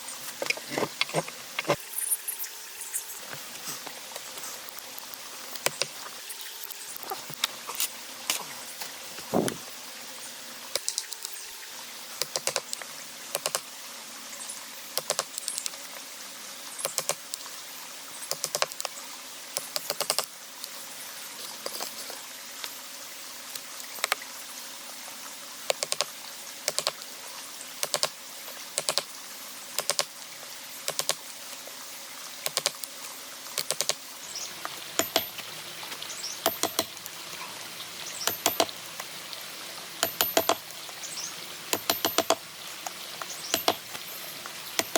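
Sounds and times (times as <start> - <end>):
hand tools clicking on wood: 12.2 - 12.6, 32.5 - 32.8, 33.6 - 34.0, 34.6 - 37.0, 38.2 - 38.8, 40.0 - 40.7, 41.7 - 44.9.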